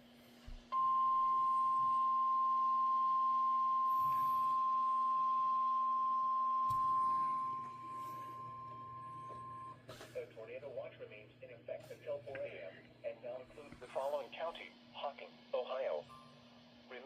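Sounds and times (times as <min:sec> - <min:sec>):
steady high alarm beep: 0:00.7 - 0:09.8.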